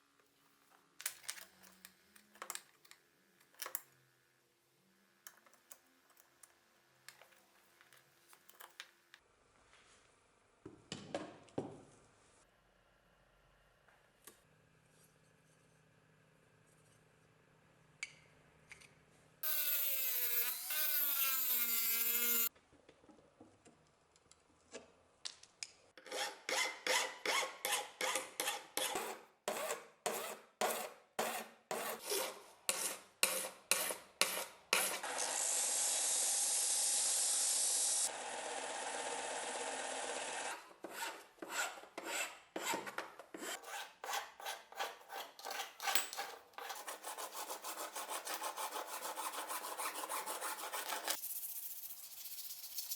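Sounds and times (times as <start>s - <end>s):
hand file rasping on wood: 28.4s - 34.9s, 40.8s - 51.2s.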